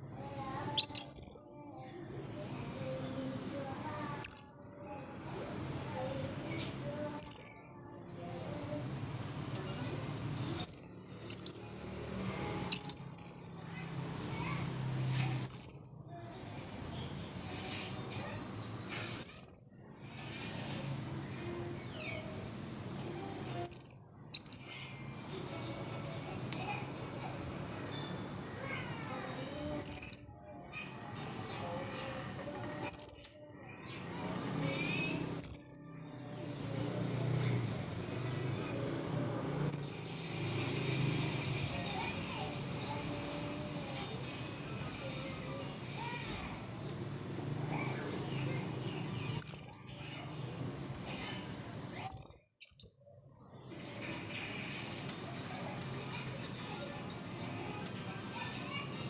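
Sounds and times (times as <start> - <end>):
parrot calling in trilled bursts: 0.8 - 1.5.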